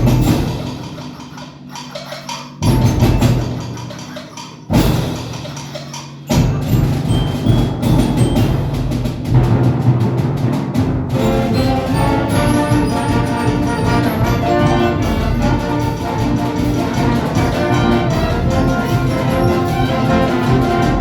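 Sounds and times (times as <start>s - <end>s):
loud band hits: 0.0s - 1.2s, 4.7s - 21.0s
jazz band playing: 10.8s - 21.0s.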